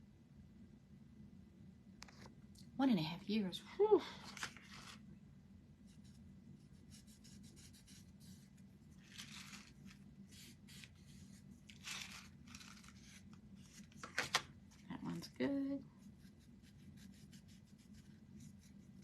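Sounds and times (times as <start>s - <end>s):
scratching on small wooden pieces: 9.0s - 10.0s, 11.6s - 14.1s.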